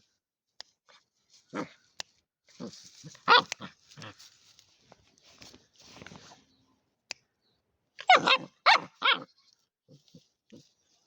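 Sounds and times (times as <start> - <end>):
puppy yapping: 3.2 - 4.1, 8.0 - 9.3.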